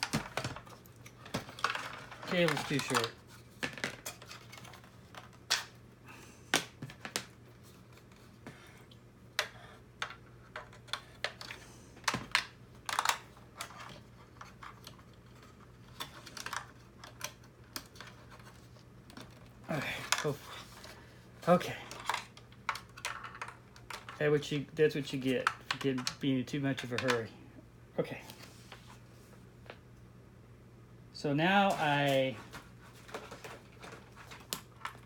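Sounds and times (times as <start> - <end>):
plastic parts clicking and tapping: 0.0 - 5.7, 9.4 - 20.4, 21.8 - 24.2, 25.1 - 27.3.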